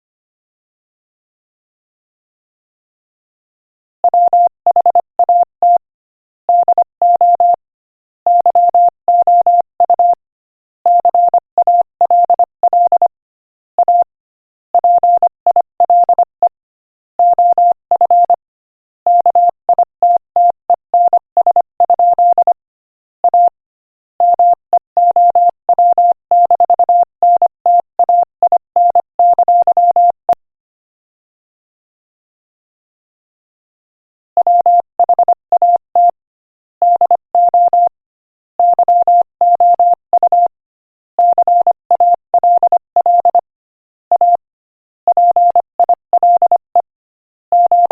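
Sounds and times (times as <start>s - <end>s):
morse code beeps: 4.1s - 5.8s, 6.5s - 7.6s, 8.3s - 10.2s, 10.9s - 13.1s, 13.8s - 14.1s, 14.8s - 16.4s, 17.2s - 18.4s, 19.1s - 22.6s, 23.3s - 23.6s, 24.2s - 30.4s, 34.4s - 36.2s, 36.8s - 38.0s, 38.6s - 40.5s, 41.2s - 43.5s, 44.1s - 44.4s, 45.1s - 46.9s, 47.5s - 47.9s.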